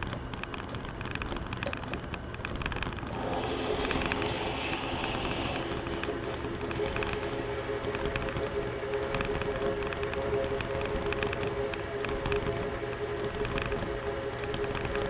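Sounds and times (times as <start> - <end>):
metal lathe running: 3.0 - 15.0.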